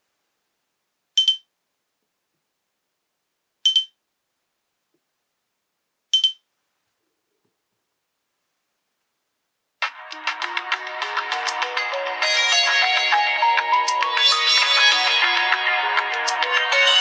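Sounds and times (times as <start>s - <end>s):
high-pitched electronic double beeps: 1.2s - 1.5s, 3.7s - 4.0s, 6.2s - 6.4s.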